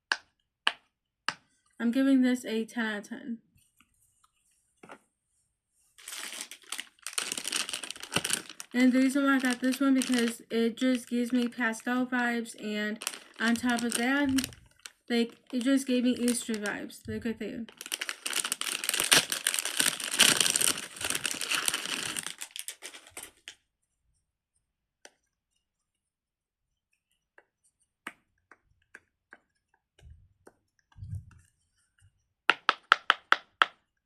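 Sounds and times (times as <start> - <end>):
plastic toy crackling rustle: 6.0 - 16.9, 17.6 - 23.6.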